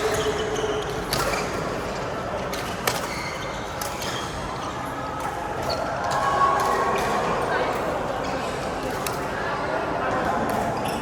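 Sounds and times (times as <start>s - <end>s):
steady background noise: 0.0s - 11.0s.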